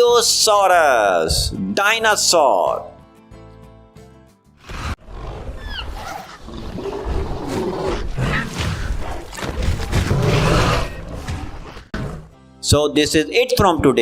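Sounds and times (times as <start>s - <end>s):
dinosaur roars and growls: 4.6s - 12.3s.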